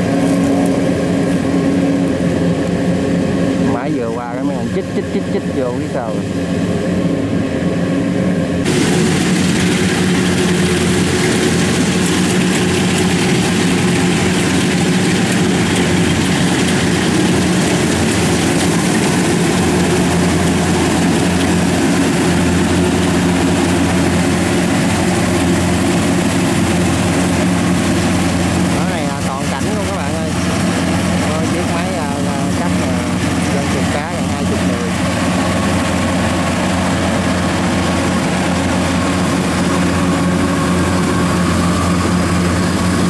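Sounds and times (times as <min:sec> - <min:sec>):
small engine running: 0:00.0 - 0:43.0
loud rushing hiss: 0:08.7 - 0:19.0.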